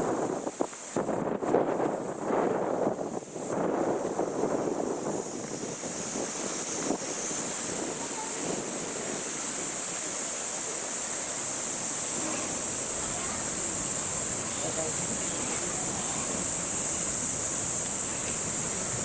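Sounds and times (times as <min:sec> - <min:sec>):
cicada chorus drone: 0:00.0 - 0:19.0
murmur of voices: 0:12.0 - 0:17.4.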